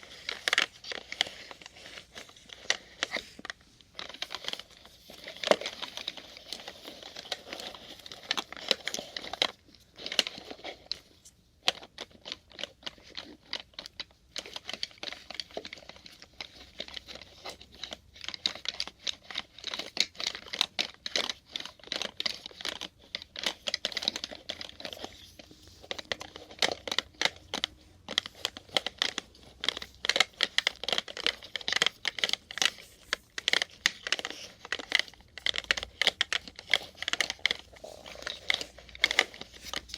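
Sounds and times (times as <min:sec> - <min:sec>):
plastic syringes clattering: 0:11.7 - 0:39.9.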